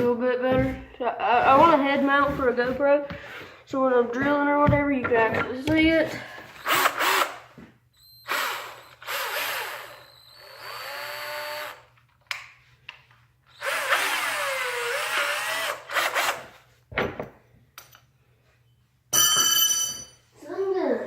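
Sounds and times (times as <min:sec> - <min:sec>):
cordless drill whining: 0:06.5 - 0:07.4, 0:08.0 - 0:11.9, 0:13.5 - 0:16.5.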